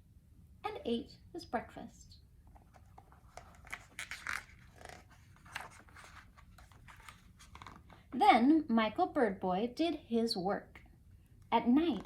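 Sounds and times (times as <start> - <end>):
book pages rustling: 2.4 - 8.1.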